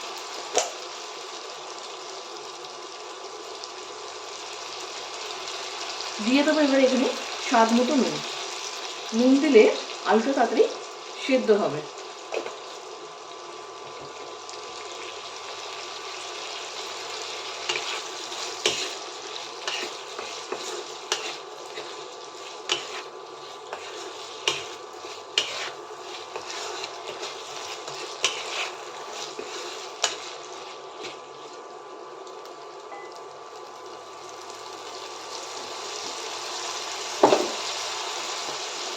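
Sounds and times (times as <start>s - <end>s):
potatoes sizzling in oil: 0.0s - 38.9s
spatula scraping a pan: 17.2s - 31.6s.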